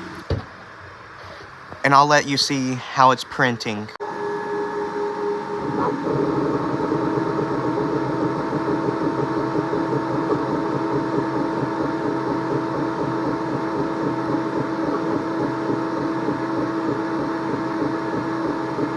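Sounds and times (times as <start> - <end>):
printer fans and motors whirring: 0.0 - 18.9
print head fluttering buzz: 4.0 - 18.9.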